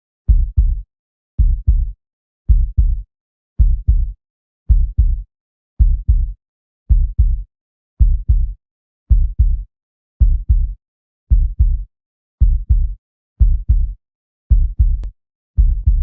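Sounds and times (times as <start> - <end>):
heartbeat thumping: 0.3 - 0.8, 1.4 - 1.9, 2.5 - 3.0, 3.6 - 4.1, 4.7 - 5.2, 5.8 - 6.3, 6.9 - 7.4, 8.0 - 8.5, 9.1 - 9.6, 10.2 - 10.7, 11.3 - 11.8, 12.4 - 16.0.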